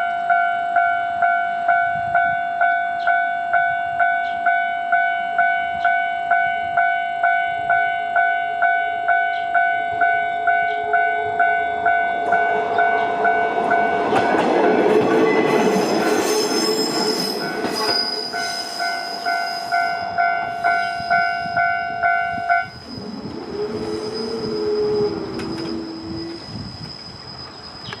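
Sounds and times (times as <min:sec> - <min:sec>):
diesel railcar rumbling past: 0:07.6 - 0:28.0
brief wavering tone: 0:16.0 - 0:28.0.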